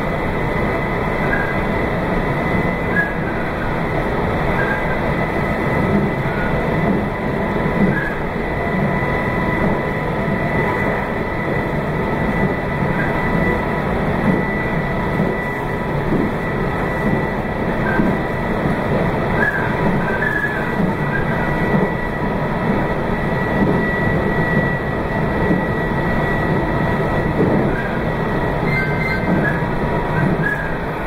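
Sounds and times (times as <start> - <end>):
train wheels rumbling on rail: 0.0 - 31.0
faint short squeaks: 28.6 - 29.6.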